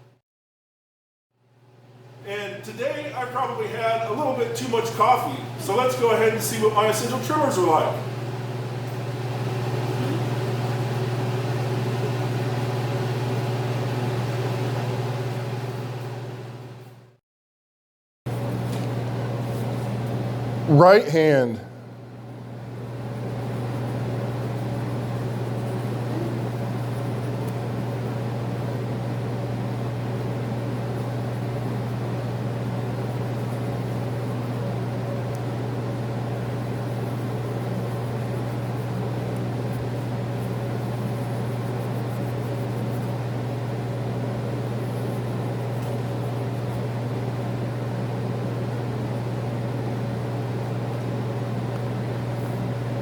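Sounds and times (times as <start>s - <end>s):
steady machine hum: 1.5s - 16.9s, 18.3s - 53.0s.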